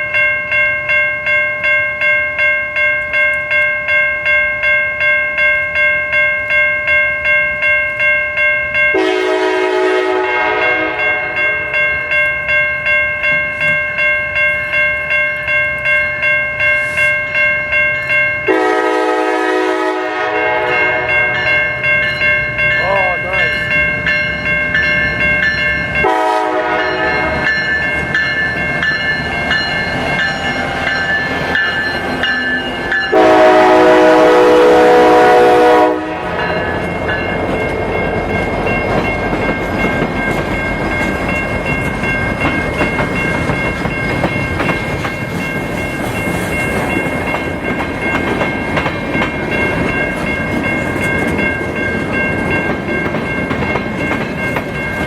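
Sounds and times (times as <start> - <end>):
locomotive horn: 9.0 - 11.6, 18.5 - 21.5, 26.0 - 27.5, 32.8 - 36.8
freight train wheels clacking: 18.0 - 55.0.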